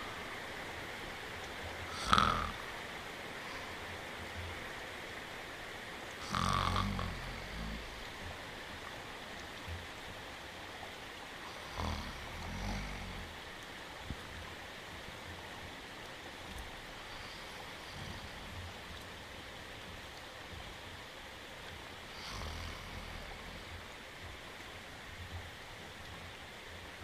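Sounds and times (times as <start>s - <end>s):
rain hiss: 0.0s - 27.0s
cartoon dog snoring: 1.9s - 2.6s, 6.2s - 8.0s, 11.6s - 13.3s, 22.2s - 23.4s.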